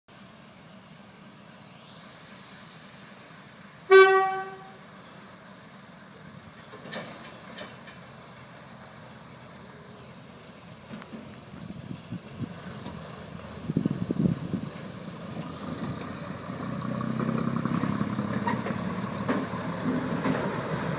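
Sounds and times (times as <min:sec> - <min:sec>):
railcar engine rumble: 0:00.1 - 0:20.9
train horn toot: 0:03.9 - 0:04.8.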